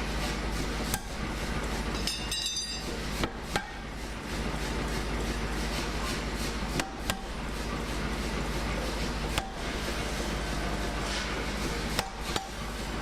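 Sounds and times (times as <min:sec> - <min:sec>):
ringing metallic clink: 0:02.0 - 0:02.8.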